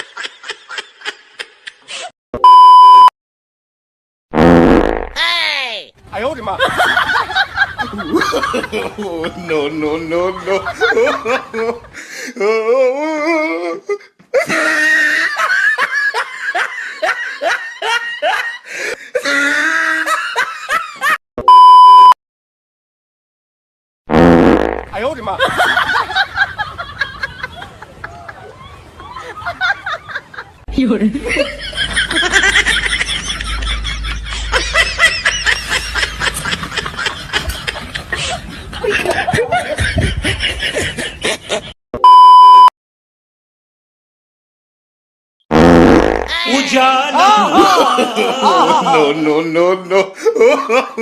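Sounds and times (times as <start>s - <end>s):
loud steady beep tone: 2.4s - 3.1s, 21.4s - 22.2s, 42.0s - 42.7s
person laughing: 12.4s - 21.2s, 25.2s - 30.5s, 31.1s - 41.8s, 47.2s - 49.2s
high-pitched laughter: 14.4s - 18.6s, 25.4s - 30.6s.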